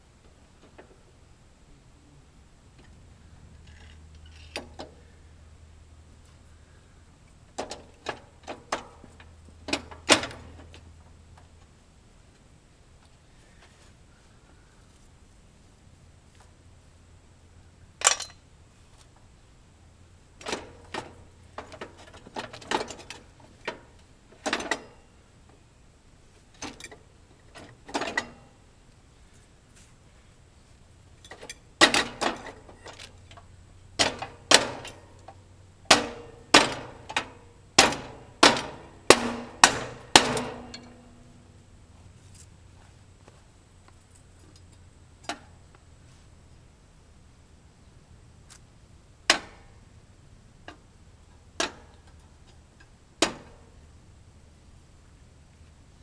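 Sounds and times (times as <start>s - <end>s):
hammer blows on metal: 35.9s - 41.2s.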